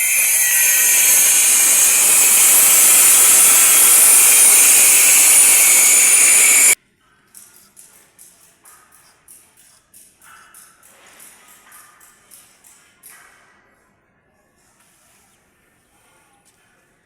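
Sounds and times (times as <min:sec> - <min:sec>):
loud steady hissing rush: 0:00.0 - 0:06.8.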